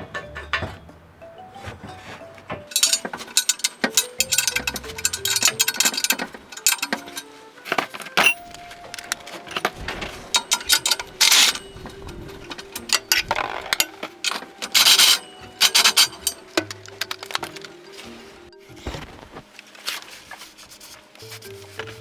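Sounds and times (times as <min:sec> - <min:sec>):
tools clinking on metal: 0:02.5 - 0:18.9
tool scraping metal: 0:02.7 - 0:18.4.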